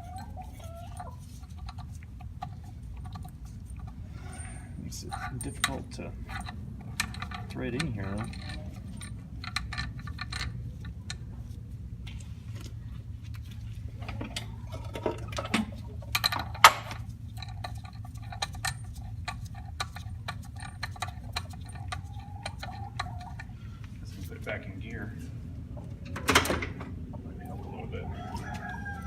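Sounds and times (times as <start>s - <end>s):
low steady hum: 0.0s - 29.0s
hand tools clicking on metal: 5.0s - 11.2s.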